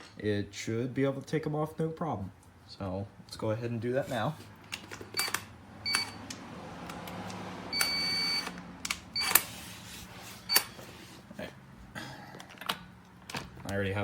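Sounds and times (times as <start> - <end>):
short electronic beep: 7.7 - 8.5.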